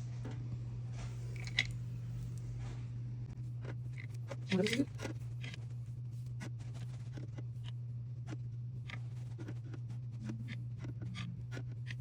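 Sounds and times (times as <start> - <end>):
steady low hum: 0.0 - 12.0
small glass bottles clicking: 1.3 - 1.7.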